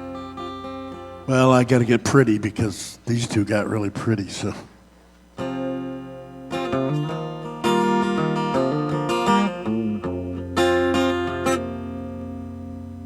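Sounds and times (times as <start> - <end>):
acoustic guitar: 0.0 - 13.0.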